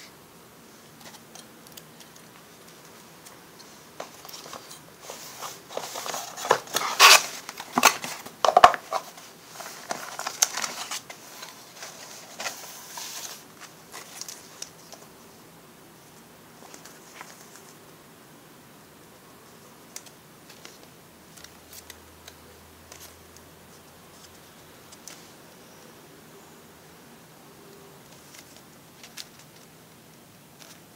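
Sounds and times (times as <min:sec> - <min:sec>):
packaging rustling and crinkling: 0:01.0 - 0:15.1, 0:28.1 - 0:29.8.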